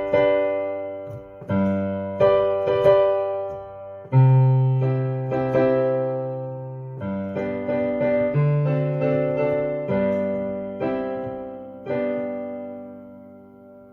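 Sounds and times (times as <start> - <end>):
piano chords: 0.0 - 13.9.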